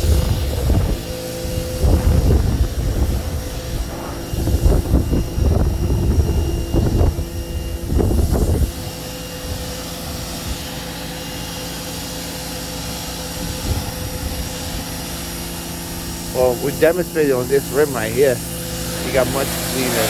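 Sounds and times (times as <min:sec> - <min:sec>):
loud irregular low rumble: 0:00.0 - 0:10.9, 0:12.9 - 0:20.0
pressure washer humming: 0:00.0 - 0:20.0.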